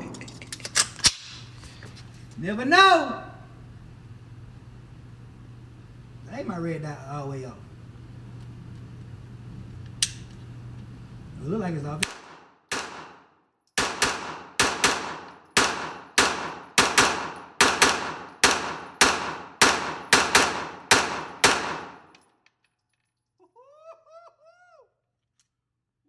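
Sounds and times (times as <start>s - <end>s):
echoing gunshots: 12.0s - 22.1s.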